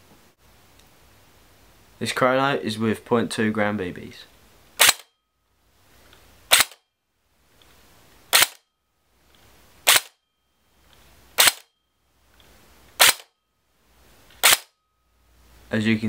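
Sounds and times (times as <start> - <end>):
airsoft gun shots: 4.8 - 5.1, 6.5 - 6.8, 8.3 - 8.6, 9.8 - 10.2, 11.4 - 11.7, 13.0 - 13.3, 14.4 - 14.8.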